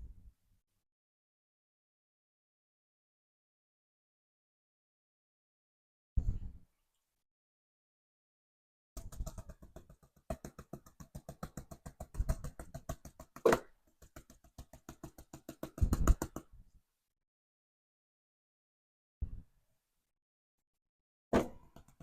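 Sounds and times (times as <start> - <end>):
tapping on a metal pan: 9.0 - 16.4.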